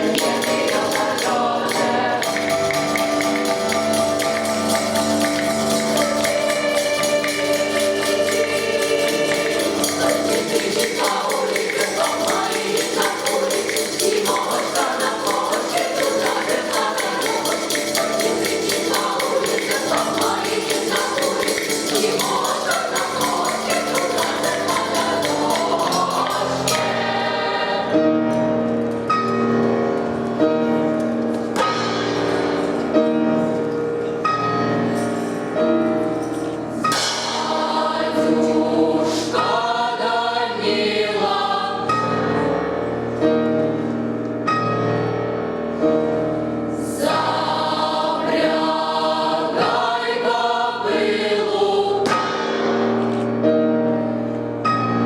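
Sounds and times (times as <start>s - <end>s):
tambourine jingling: 0.0s - 27.2s
choir singing folk song: 0.0s - 28.7s, 37.0s - 43.9s, 45.7s - 54.3s
instrumental accompaniment chords: 0.0s - 38.6s.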